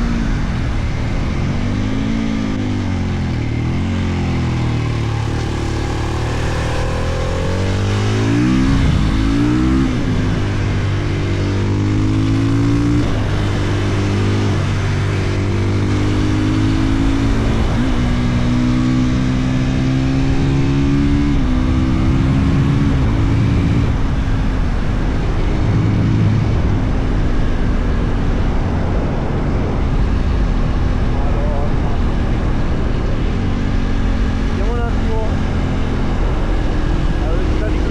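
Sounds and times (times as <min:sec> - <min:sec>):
motorcycle engine pulling hard: 0:00.0 - 0:37.9.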